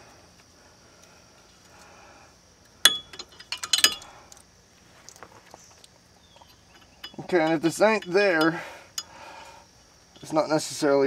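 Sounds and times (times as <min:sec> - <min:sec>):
metal tools clinking: 0:02.8 - 0:04.4, 0:06.3 - 0:09.4, 0:10.1 - 0:10.5.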